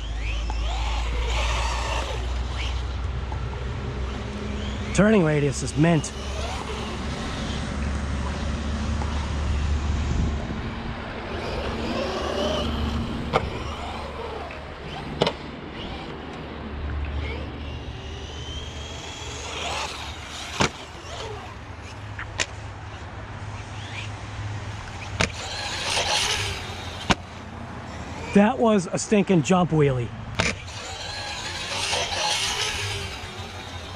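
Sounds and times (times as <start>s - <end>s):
electric motor whining: 0.0s - 22.4s, 23.6s - 28.6s, 30.3s - 33.9s.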